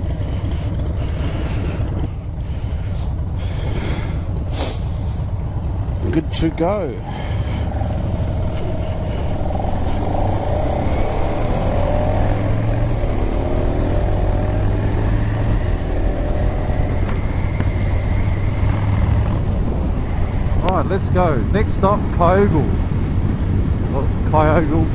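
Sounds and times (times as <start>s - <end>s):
motorcycle engine accelerating: 0.0s - 24.7s
low rumble: 0.0s - 24.9s
wind noise on microphone: 7.0s - 24.9s.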